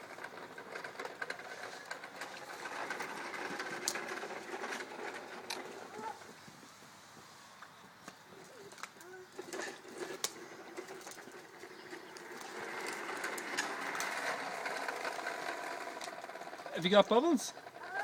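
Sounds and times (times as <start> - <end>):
toy motor whirring: 9.0 - 18.0.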